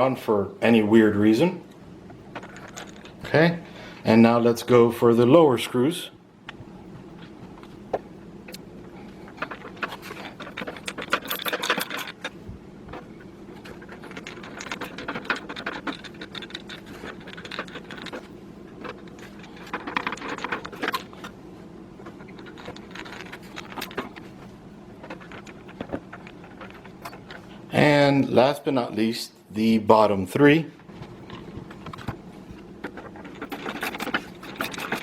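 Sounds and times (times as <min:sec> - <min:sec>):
faint steady hum: 0:00.0 - 0:35.0.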